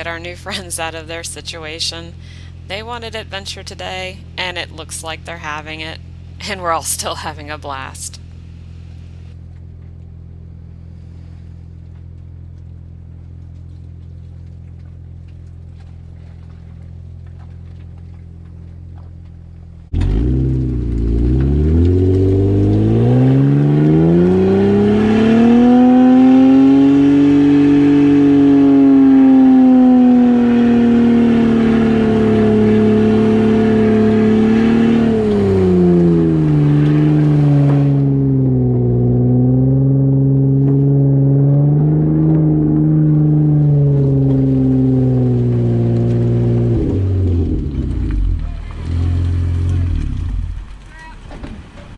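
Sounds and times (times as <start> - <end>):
engine revving high: 20.0 - 50.6.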